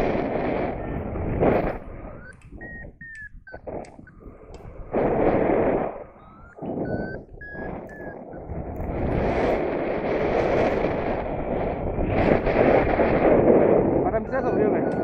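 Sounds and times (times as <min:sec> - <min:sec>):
wind buffeting microphone: 0:00.0 - 0:15.0
short high beeps: 0:00.7 - 0:04.3, 0:06.2 - 0:08.5, 0:14.2 - 0:15.0.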